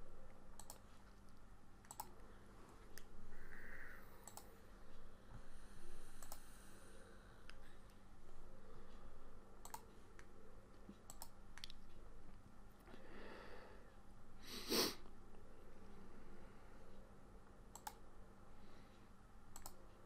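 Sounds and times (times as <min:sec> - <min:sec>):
faint steady hum: 0:00.0 - 0:20.0
computer mouse clicking: 0:00.5 - 0:02.2, 0:04.1 - 0:04.6, 0:06.1 - 0:06.5, 0:09.6 - 0:10.3, 0:10.9 - 0:11.8, 0:17.7 - 0:18.0, 0:19.5 - 0:19.9.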